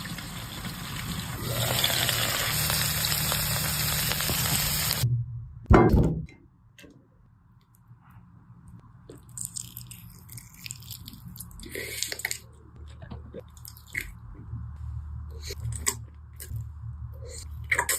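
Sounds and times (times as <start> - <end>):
person chewing crunchy chicken: 9.1 - 12.4.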